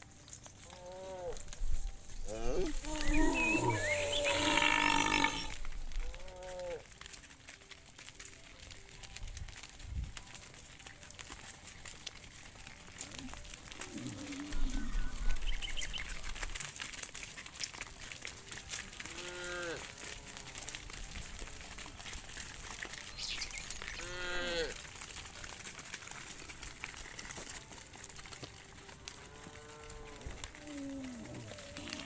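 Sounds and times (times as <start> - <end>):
cows mooing: 0.7 - 1.4, 2.3 - 6.9, 13.2 - 15.4, 19.0 - 19.9, 24.0 - 24.8, 29.1 - 32.0.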